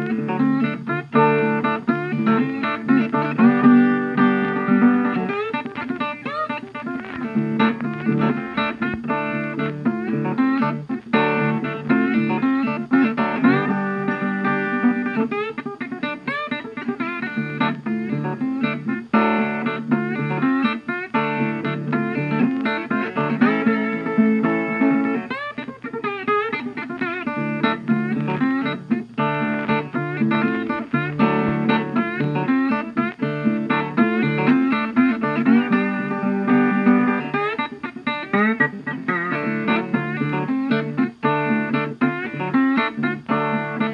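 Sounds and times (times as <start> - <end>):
plucked guitar notes: 0.0 - 43.9.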